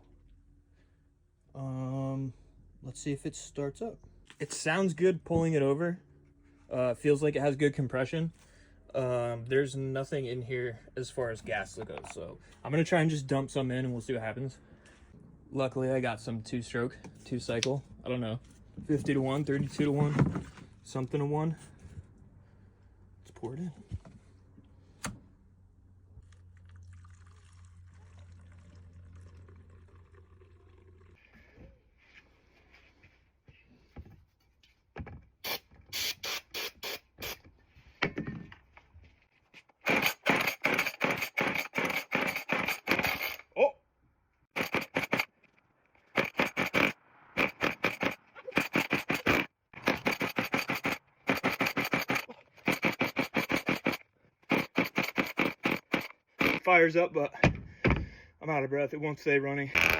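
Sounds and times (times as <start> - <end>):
fuel pouring into tank: 26.2 - 31.4
chainsaw pull-start rasping: 35.4 - 37.4, 39.7 - 43.5, 44.5 - 56.7.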